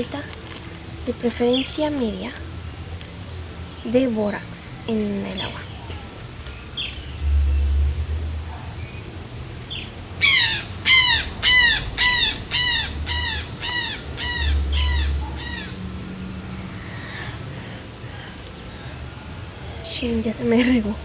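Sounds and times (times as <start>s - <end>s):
bird calling repeated notes: 9.7s - 15.9s.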